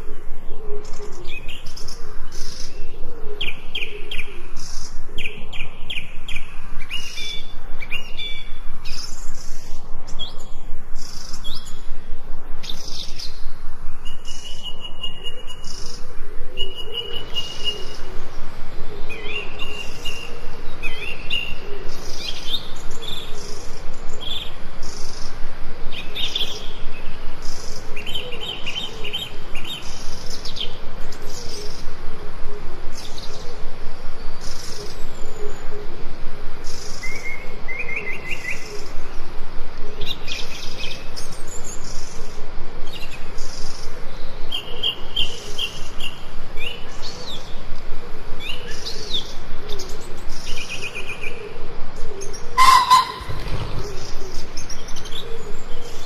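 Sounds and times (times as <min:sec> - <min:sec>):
birds chirping and trilling: 0:00.0 - 0:56.0
steady background hiss: 0:00.0 - 0:56.0
low wavering bird call: 0:14.0 - 0:23.3, 0:52.5 - 0:54.6.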